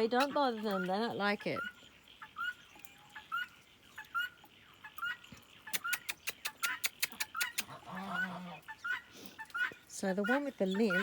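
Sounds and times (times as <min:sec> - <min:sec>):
fowl calling: 0:00.0 - 0:11.0
sharp clicks: 0:05.7 - 0:07.7.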